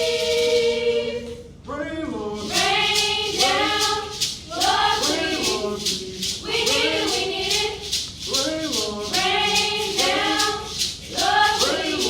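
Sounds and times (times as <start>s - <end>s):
children's choir singing: 0.0s - 1.5s, 2.4s - 12.0s
sharp rhythmic hits: 2.4s - 12.0s.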